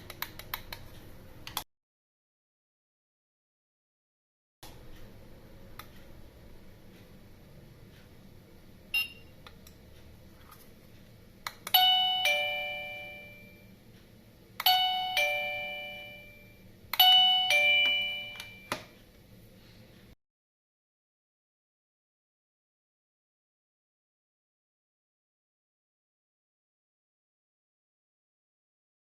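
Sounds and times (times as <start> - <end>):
click: 0.0 - 1.6
doorbell ding-dong chime: 11.7 - 13.7, 14.6 - 19.0.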